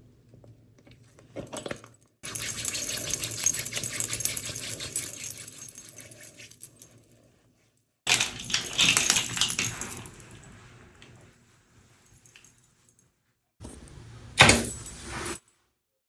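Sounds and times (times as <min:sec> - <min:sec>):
small hard objects jingling: 0:01.6 - 0:07.2, 0:08.1 - 0:10.5.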